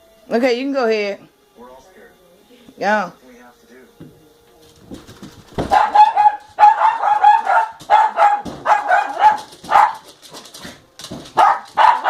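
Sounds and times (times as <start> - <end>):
dog barking: 5.6 - 10.5, 11.3 - 12.0.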